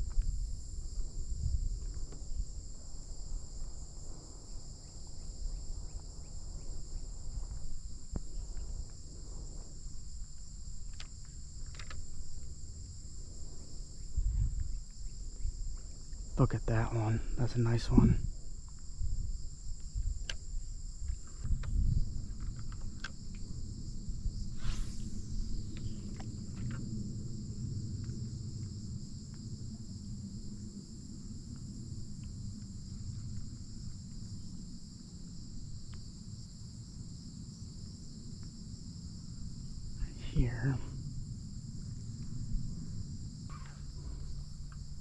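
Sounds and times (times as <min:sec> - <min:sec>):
insects chirring: 0:00.0 - 0:45.0
low rumble: 0:23.5 - 0:33.8.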